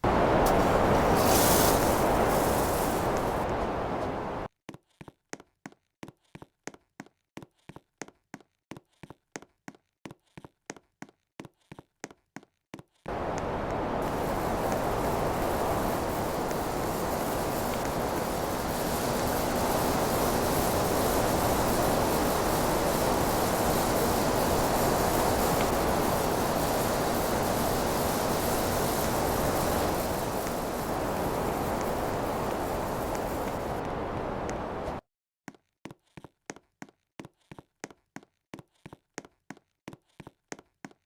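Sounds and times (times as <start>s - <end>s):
air conditioner rushing air: 0.0s - 4.5s, 13.1s - 35.0s
faint hum: 0.0s - 4.5s, 13.1s - 35.0s.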